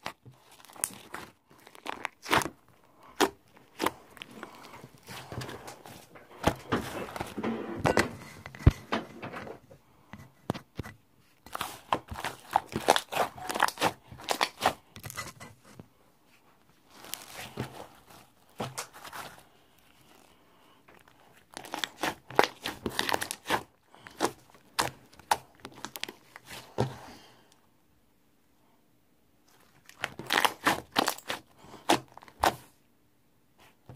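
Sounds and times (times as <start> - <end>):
crinkling and crunching: 0.0 - 9.8, 10.4 - 27.6, 29.4 - 32.8.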